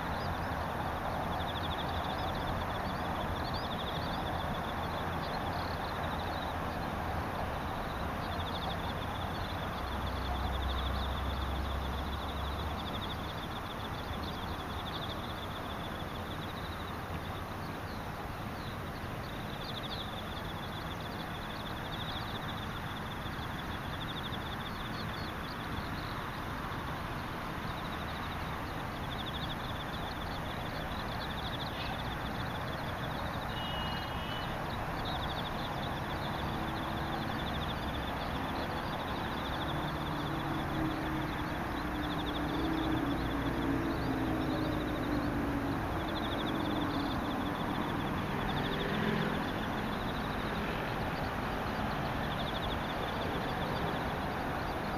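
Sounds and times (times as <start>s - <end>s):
insects trilling: 0.0s - 54.9s
outdoor background hiss: 0.0s - 54.9s
bird call: 27.6s - 54.9s.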